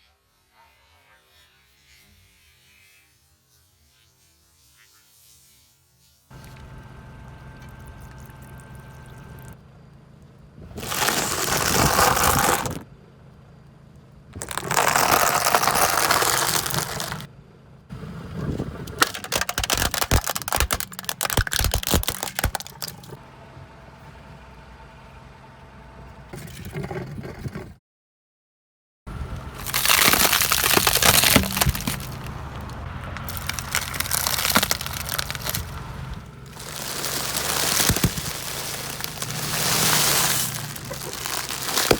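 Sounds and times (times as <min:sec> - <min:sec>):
plastic bottles crushed by tyres: 0:10.7 - 0:12.8, 0:14.4 - 0:17.3, 0:18.9 - 0:23.2, 0:29.5 - 0:41.9.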